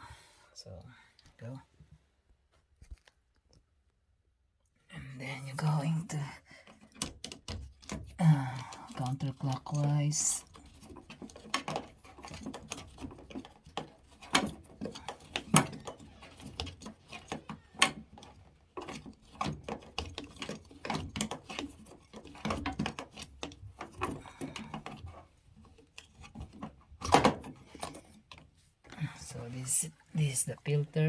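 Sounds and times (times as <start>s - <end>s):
hard plastic clicking and tapping: 6.7s - 29.0s.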